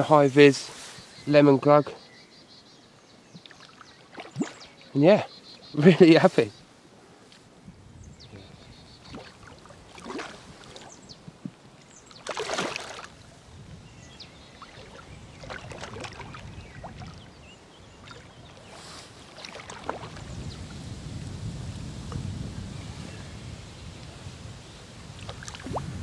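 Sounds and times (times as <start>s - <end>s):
fish splashing in water: 3.5s - 4.8s, 9.0s - 11.0s, 12.2s - 13.2s, 14.5s - 17.3s, 18.0s - 20.4s, 25.2s - 25.8s.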